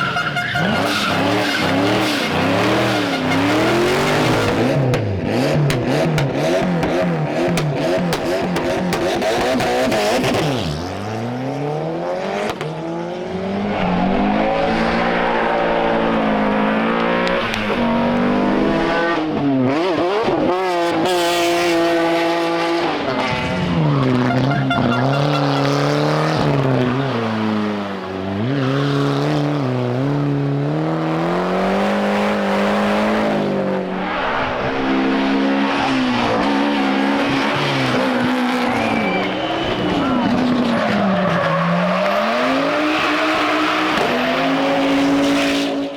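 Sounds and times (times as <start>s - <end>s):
tyres squealing and skidding: 0.0s - 4.9s, 23.2s - 29.1s, 33.7s - 45.6s
rally car engine revving: 0.0s - 45.9s.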